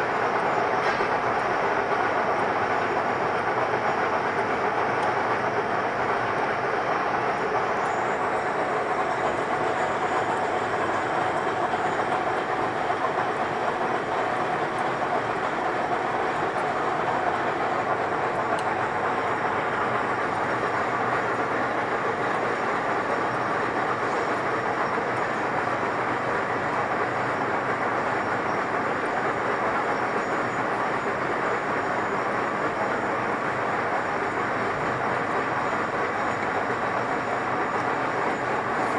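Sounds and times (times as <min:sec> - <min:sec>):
lathe running: 0:07.6 - 0:24.0.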